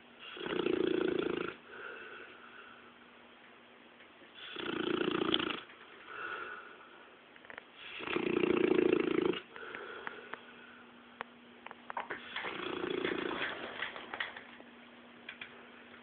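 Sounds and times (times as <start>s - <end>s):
dog snoring: 0.2s - 1.9s, 4.4s - 5.7s, 7.8s - 9.6s, 12.3s - 13.6s.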